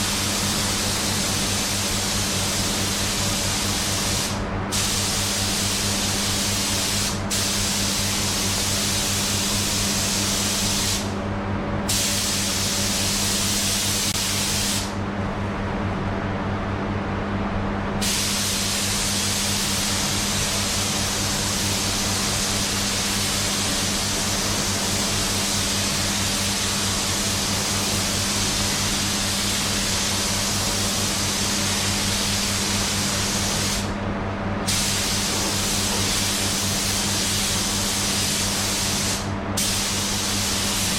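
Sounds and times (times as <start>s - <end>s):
steady low hum: 0.0s - 40.9s
paint spray gun hissing: 34.7s - 40.9s.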